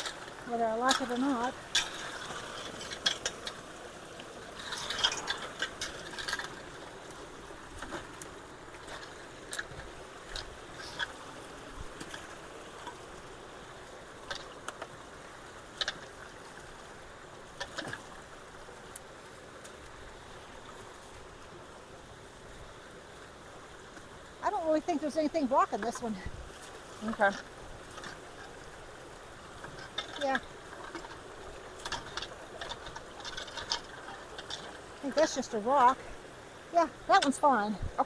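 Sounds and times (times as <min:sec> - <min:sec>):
water running into culvert: 0:00.0 - 0:38.0.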